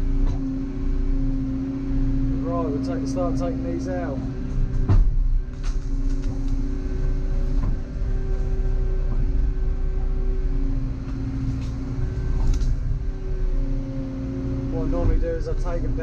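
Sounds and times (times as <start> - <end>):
excavator engine and hydraulic whine: 0.0 - 16.0.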